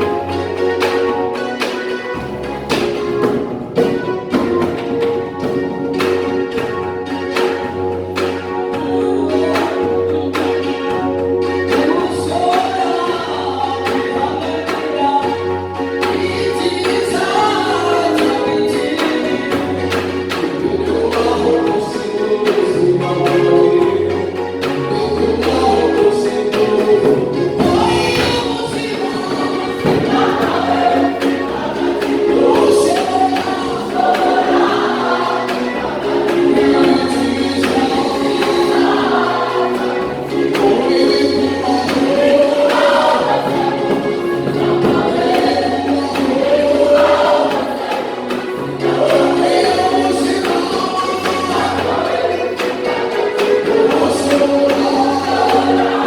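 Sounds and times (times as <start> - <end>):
choir singing: 0.0 - 56.0
instrumental backing with bass: 0.0 - 56.0.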